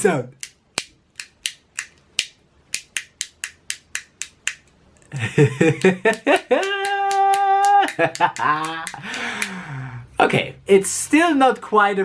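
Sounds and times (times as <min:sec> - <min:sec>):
sharp dry clicks: 0:00.4 - 0:04.8.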